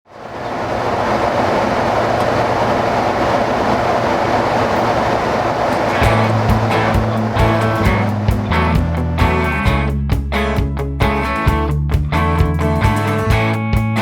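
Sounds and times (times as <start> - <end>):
airflow and engine hum in cockpit: 0.1 - 10.0
music with pulsing bass: 6.0 - 14.0.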